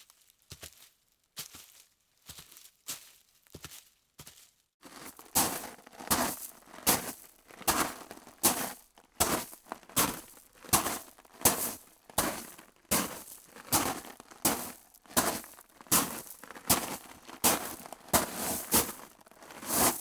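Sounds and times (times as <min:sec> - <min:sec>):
footsteps on gritty surface: 0:04.8 - 0:20.0.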